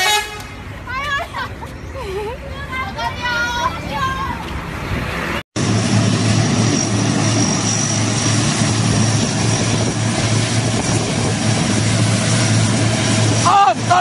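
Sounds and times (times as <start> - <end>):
large vehicle engine running: 5.6 - 14.0.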